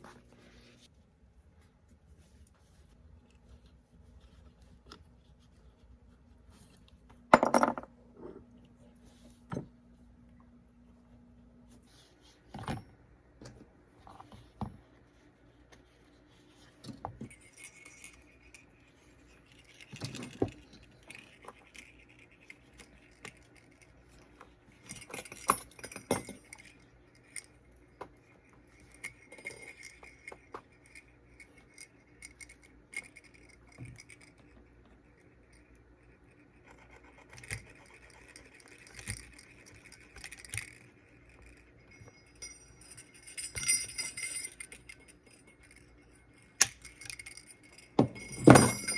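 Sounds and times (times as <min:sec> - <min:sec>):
sleigh bells jingling: 0:48.2 - 0:48.9.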